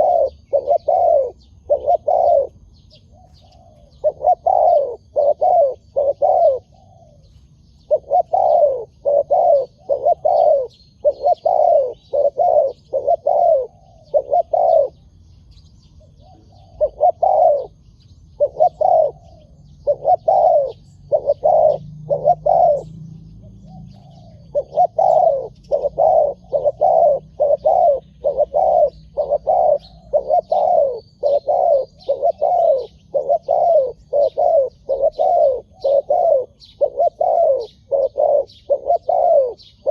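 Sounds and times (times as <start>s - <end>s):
doves cooing: 0.0s - 39.9s
small birds chirping: 0.0s - 39.9s.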